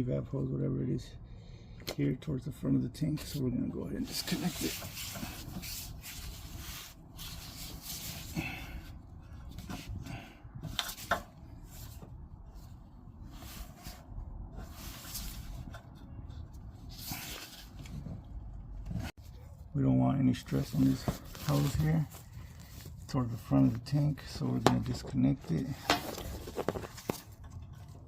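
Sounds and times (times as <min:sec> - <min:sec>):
hands rustling and scraping: 0:04.0 - 0:10.0, 0:10.6 - 0:19.5, 0:20.5 - 0:28.0.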